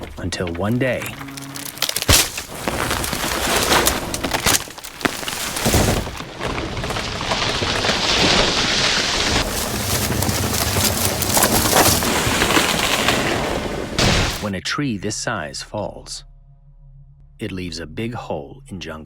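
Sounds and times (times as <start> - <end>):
tree cracking and crashing down: 0.0 - 14.5
heavy torrential rain: 1.0 - 14.4.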